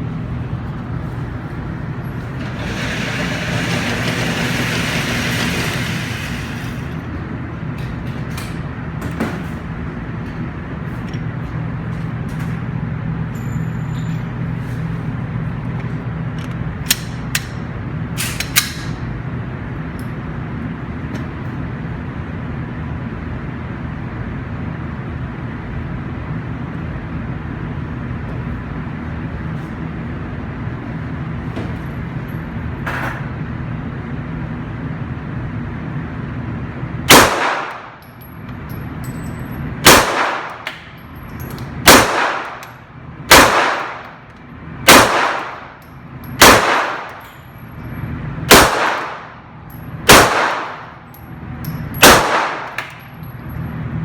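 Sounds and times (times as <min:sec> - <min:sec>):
steady background noise: 0:00.0 - 0:54.0
gun handling clicks: 0:16.3 - 0:17.6, 0:18.2 - 0:19.0, 0:45.4 - 0:47.4
handgun shots: 0:37.1 - 0:38.0, 0:39.8 - 0:41.0, 0:41.8 - 0:44.2, 0:44.9 - 0:45.8, 0:46.4 - 0:47.3, 0:48.5 - 0:49.4, 0:50.1 - 0:51.0, 0:52.0 - 0:53.1.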